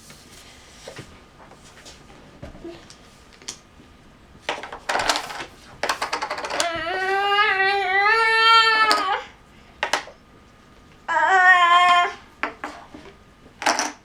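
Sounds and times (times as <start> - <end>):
long high-pitched vocal tone: 11.1 - 12.3.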